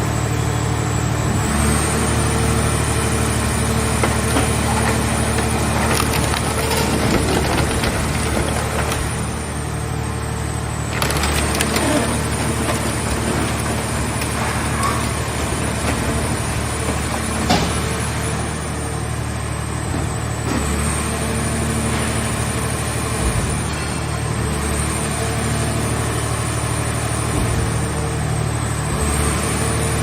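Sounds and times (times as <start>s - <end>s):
hydraulic power unit humming: 0.0s - 30.0s
metal creaking and crackling: 3.6s - 9.8s, 10.8s - 18.3s.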